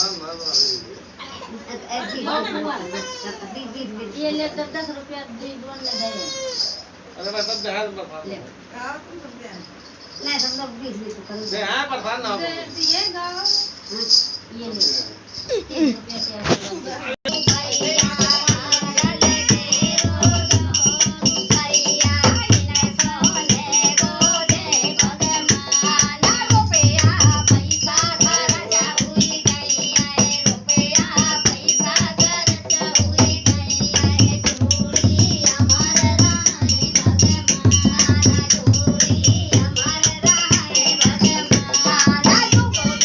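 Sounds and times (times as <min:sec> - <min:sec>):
fast dense percussion: 0:17.3 - 0:43.0
bass beat: 0:33.4 - 0:40.5.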